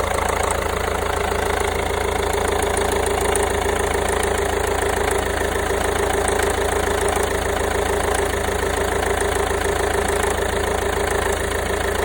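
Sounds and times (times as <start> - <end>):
diesel engine idling: 0.0 - 12.0.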